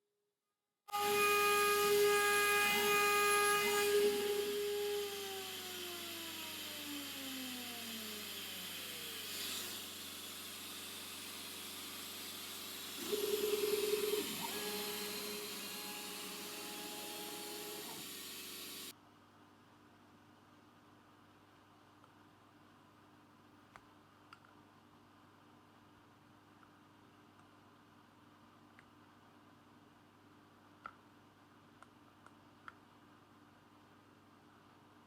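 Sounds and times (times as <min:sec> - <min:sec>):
pulsing buzz: 0:00.9 - 0:06.5, 0:12.0 - 0:18.9
router spindle whine spinning down: 0:00.9 - 0:18.9.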